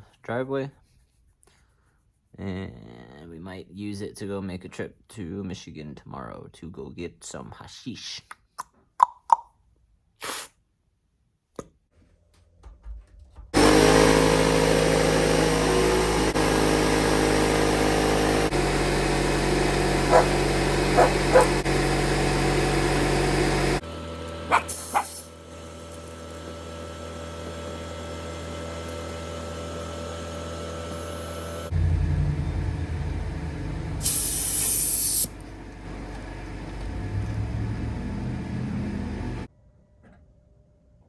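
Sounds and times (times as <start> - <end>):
air compressor running: 13.6 - 39.5.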